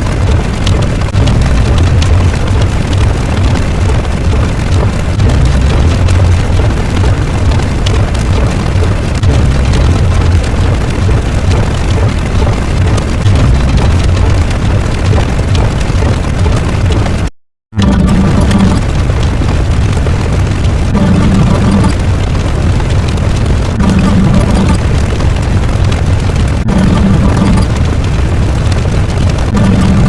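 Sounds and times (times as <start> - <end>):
hiss with faint crackles: 0.0 - 17.2
deep low rumble: 0.0 - 30.0.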